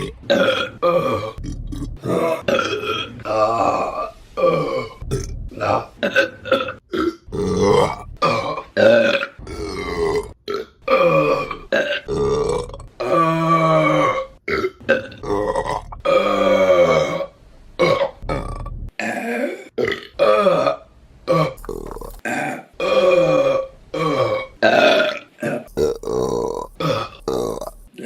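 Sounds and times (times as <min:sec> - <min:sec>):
woman belching: 0:00.0 - 0:03.8, 0:04.4 - 0:13.3, 0:21.4 - 0:28.0.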